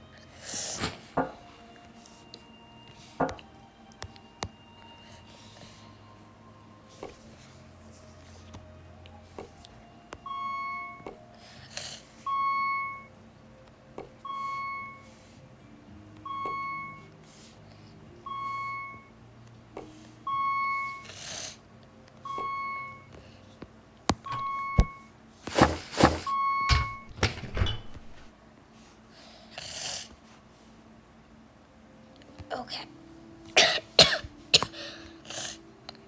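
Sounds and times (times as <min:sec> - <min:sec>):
clicks and knocks: 0:25.5 - 0:28.3.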